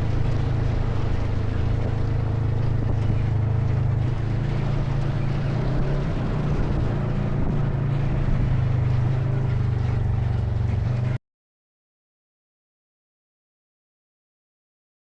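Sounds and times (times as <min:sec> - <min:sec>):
atv engine running: 0:00.0 - 0:11.2
trail noise: 0:00.0 - 0:11.2.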